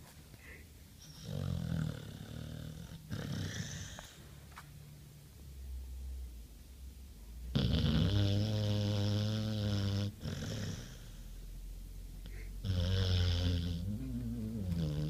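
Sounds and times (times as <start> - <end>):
dog snoring with raspy hiss: 1.0 - 4.2, 7.5 - 11.5, 12.2 - 15.0.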